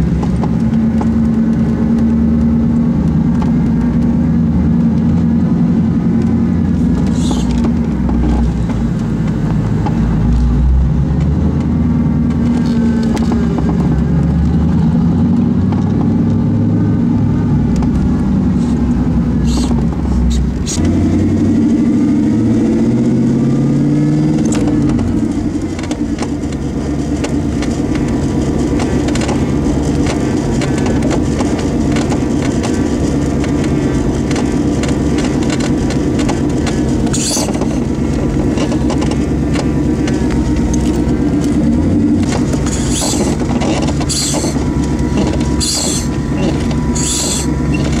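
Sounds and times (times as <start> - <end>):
car engine running: 0.0 - 48.0
sharp popping noises: 24.3 - 48.0.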